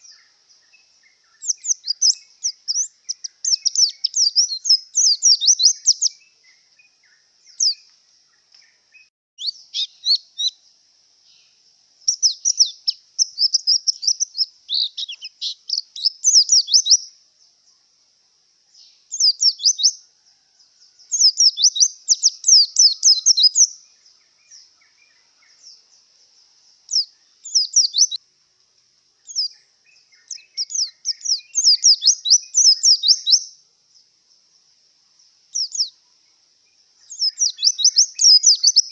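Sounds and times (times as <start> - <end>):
bird twittering song: 0.0 - 18.0, 18.6 - 28.2, 29.1 - 38.9
faint high hiss: 0.0 - 38.9.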